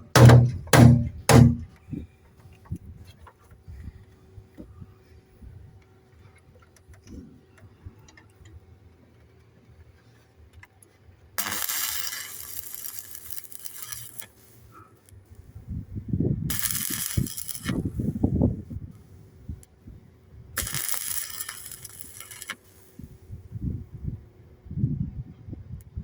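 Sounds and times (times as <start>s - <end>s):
low thumps: 0.0s - 1.8s
welding crackling hiss: 11.4s - 15.2s, 16.5s - 18.1s, 20.6s - 23.2s.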